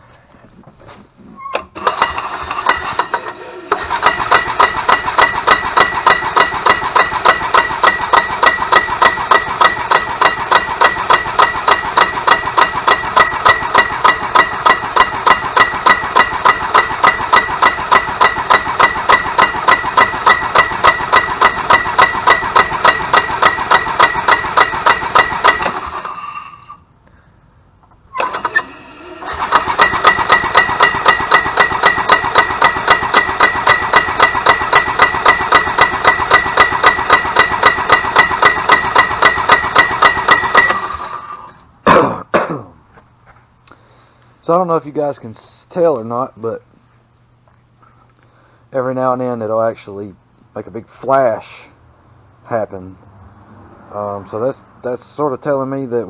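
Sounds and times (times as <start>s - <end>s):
starter motor whine: 1.6s - 26.8s, 28.1s - 41.7s.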